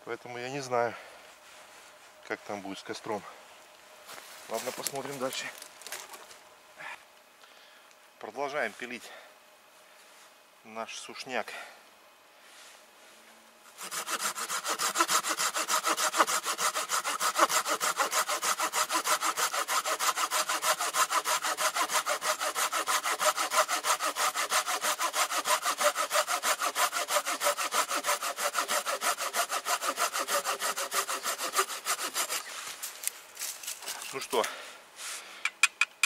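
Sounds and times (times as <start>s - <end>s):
hand saw cutting wood: 13.8s - 32.9s.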